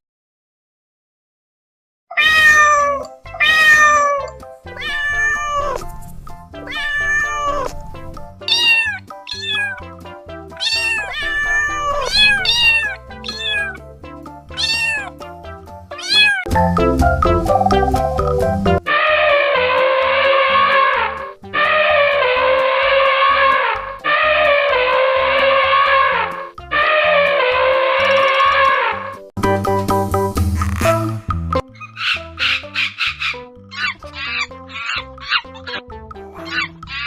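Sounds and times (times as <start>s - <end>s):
cat meowing: 2.1s - 5.9s, 6.6s - 9.9s, 10.6s - 13.8s, 14.5s - 15.2s, 15.9s - 16.5s, 18.9s - 29.0s, 31.8s - 37.0s
background music: 2.2s - 37.0s.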